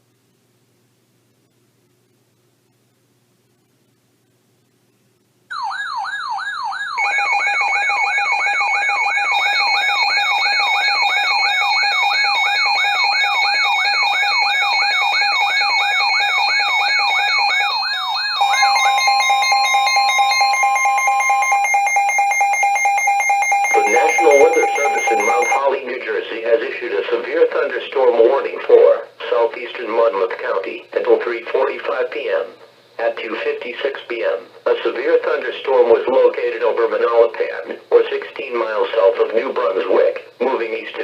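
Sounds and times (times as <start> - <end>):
warbling siren tone: 5.5 - 25.6
steady alert tones: 18.4 - 25.6.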